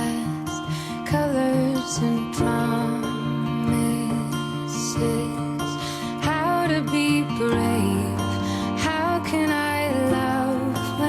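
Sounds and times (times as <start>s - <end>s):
plucked acoustic guitar music: 0.0s - 11.0s.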